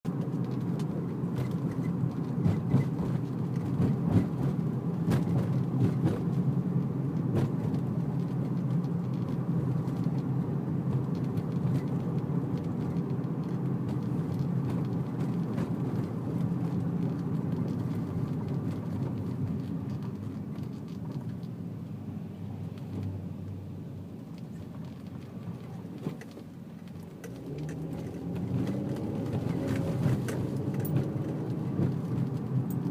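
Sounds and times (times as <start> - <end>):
road and engine rumble: 0.0 - 32.9
suspension clicking over bumps: 0.1 - 32.9.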